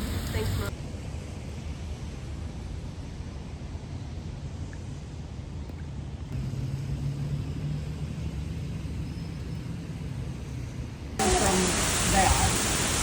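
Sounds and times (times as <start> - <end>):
heavy rain pouring: 0.0 - 0.7, 11.2 - 13.0
vehicle rumble: 5.9 - 13.0.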